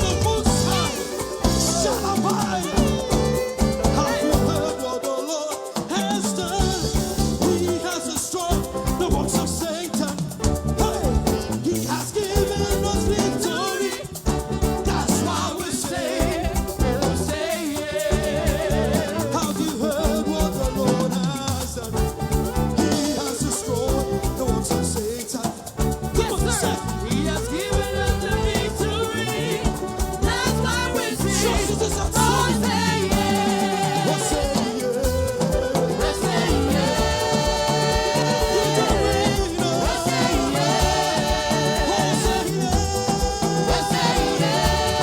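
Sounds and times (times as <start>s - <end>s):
band playing upbeat groove: 0.0s - 45.0s
person singing: 0.0s - 45.0s.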